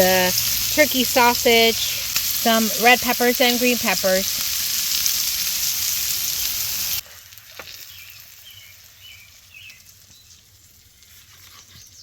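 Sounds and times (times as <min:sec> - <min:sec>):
food sizzling in a pan: 0:00.0 - 0:12.0.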